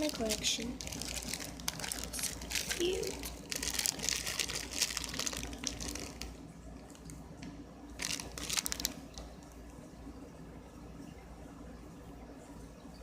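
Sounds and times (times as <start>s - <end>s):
plastic packaging crinkling: 0.0s - 7.3s, 7.9s - 9.5s.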